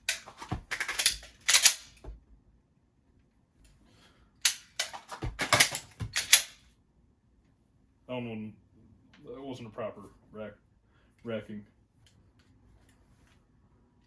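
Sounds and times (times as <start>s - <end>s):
pistol metallic clicks and clacks: 0.0s - 2.1s, 4.4s - 6.6s.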